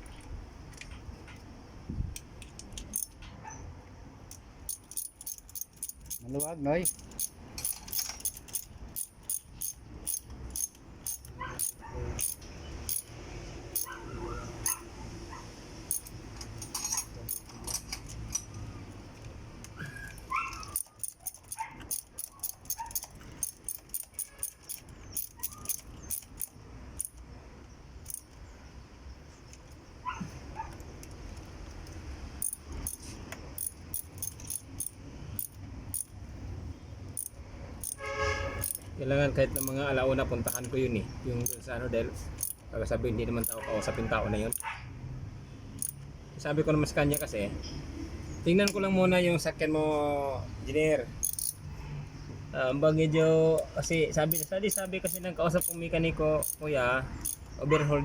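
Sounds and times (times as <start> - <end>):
metal tools clicking and clinking: 2.2 - 3.4, 4.2 - 14.0, 14.6 - 14.8, 15.9 - 27.3, 28.0 - 28.5, 30.8 - 36.2, 37.1 - 39.8, 40.4 - 40.8, 41.4 - 41.7, 42.3 - 42.7, 43.4 - 43.6, 45.8 - 46.1, 47.1 - 47.3, 51.1 - 51.7, 53.6 - 57.6.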